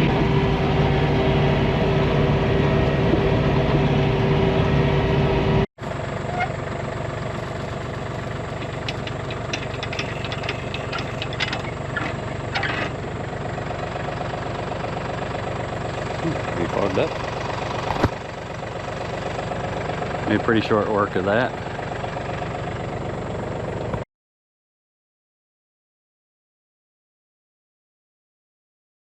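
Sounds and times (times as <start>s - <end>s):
tractor engine running: 0.0s - 24.0s
light clicks and rattles: 8.5s - 12.7s.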